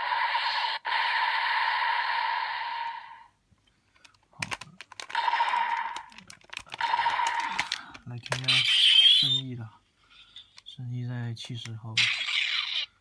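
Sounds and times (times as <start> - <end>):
plastic clicks: 3.6 - 8.6.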